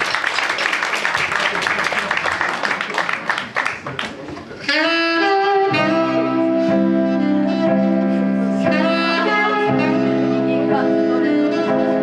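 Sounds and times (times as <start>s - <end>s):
live band playing: 4.5s - 12.0s.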